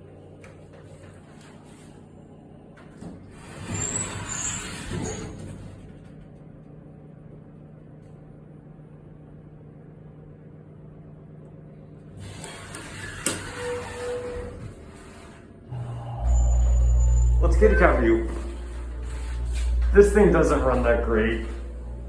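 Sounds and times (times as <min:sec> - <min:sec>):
elevator humming: 0:00.0 - 0:22.0
high squeaks and rattling: 0:03.4 - 0:05.7
short tone: 0:15.7 - 0:22.0.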